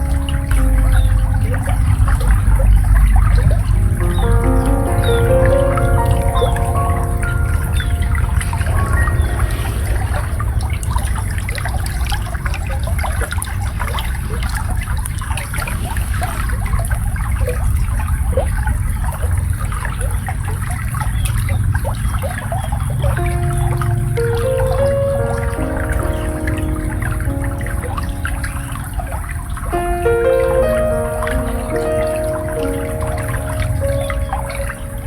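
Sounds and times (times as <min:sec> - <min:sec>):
slow soft music: 0:00.0 - 0:11.3, 0:23.2 - 0:35.0
steady low rumble: 0:00.0 - 0:11.7
shallow water babbling: 0:00.0 - 0:35.0.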